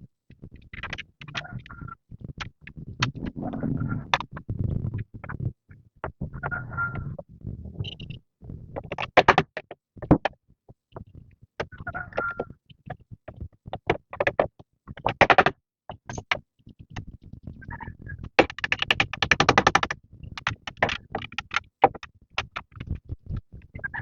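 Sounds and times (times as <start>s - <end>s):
sharp clicks and knocks: 13.3s - 16.4s, 18.3s - 23.0s.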